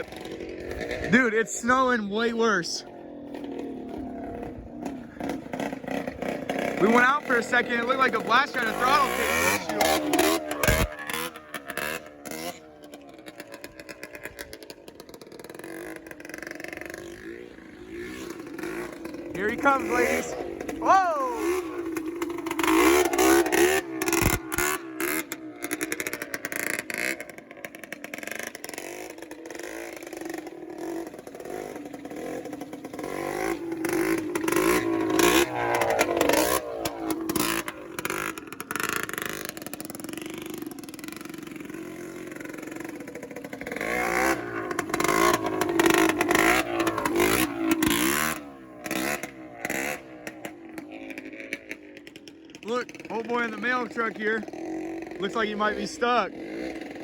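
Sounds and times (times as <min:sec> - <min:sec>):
motorcycle engine revving: 0:00.0 - 0:57.0
exhaust crackling pops: 0:03.3 - 0:15.2, 0:18.2 - 0:41.6.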